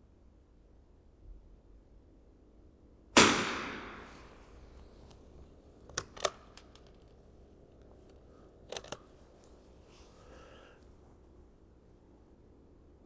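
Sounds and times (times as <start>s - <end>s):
rifle shot: 3.2s - 4.5s.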